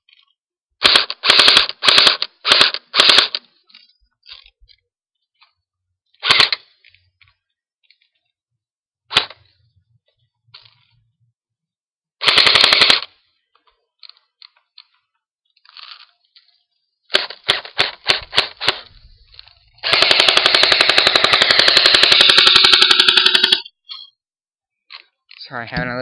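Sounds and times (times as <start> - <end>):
airsoft rifle firing bursts: 0.8 - 3.4, 6.2 - 6.6, 12.2 - 13.1, 17.1 - 18.9, 19.8 - 23.6.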